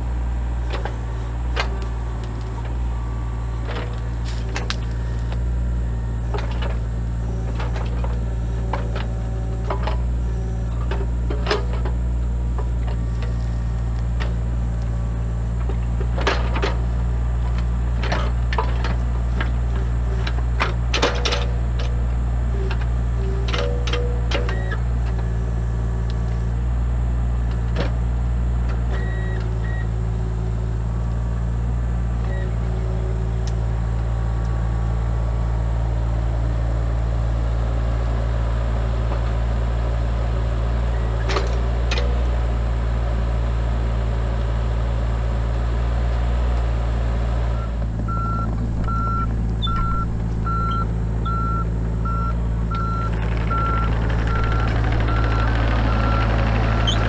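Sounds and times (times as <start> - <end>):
excavator diesel engine running: 0.0 - 57.0
travel alarm beeping: 48.1 - 55.4.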